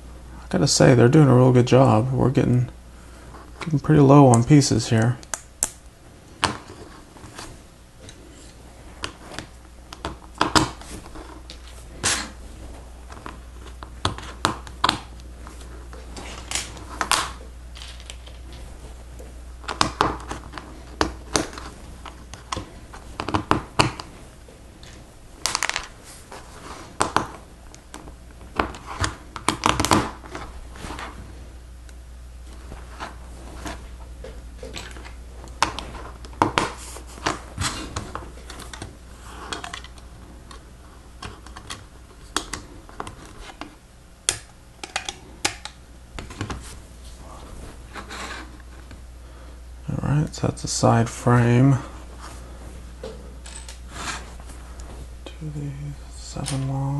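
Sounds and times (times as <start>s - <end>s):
plastic pieces clicking and rattling: 44.4s - 45.8s.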